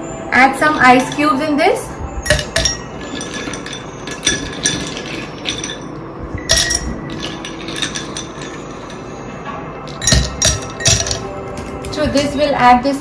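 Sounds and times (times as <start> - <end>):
ice cubes clinking into glass: 2.3 - 9.1, 9.9 - 11.3.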